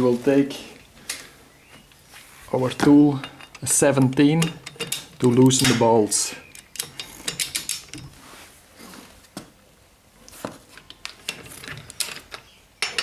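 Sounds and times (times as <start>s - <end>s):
wrench clicking on wheel bolts: 3.1s - 5.9s, 6.5s - 8.1s.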